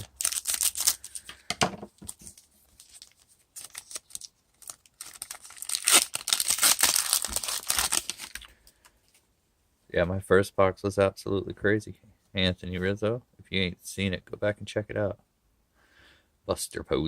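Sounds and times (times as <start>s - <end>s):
wrapper crinkling and tearing: 0.0s - 1.4s, 2.0s - 8.8s.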